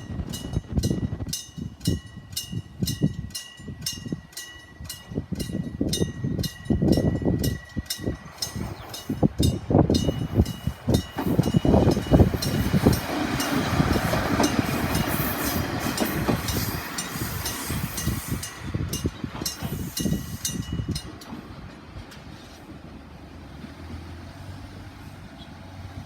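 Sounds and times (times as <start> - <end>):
train wheels knocking over rail joints: 6.7 - 23.0.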